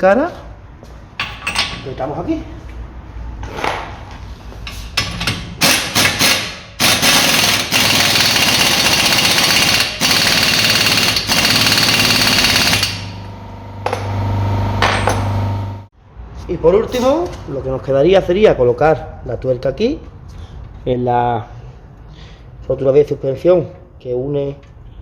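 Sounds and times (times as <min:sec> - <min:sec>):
impact wrench hammering: 0:04.7 - 0:14.2, 0:14.8 - 0:15.5.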